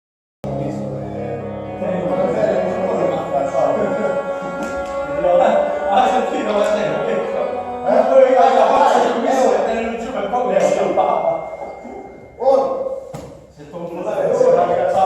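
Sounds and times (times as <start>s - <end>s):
music with singing: 0.4s - 12.4s.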